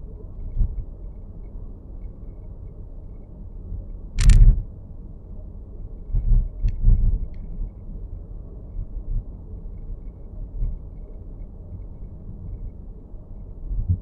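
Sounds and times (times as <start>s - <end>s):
low road rumble in car: 0.0s - 14.0s
loud sharp click: 4.2s - 4.6s
dull knocks with faint ticks: 6.2s - 7.5s.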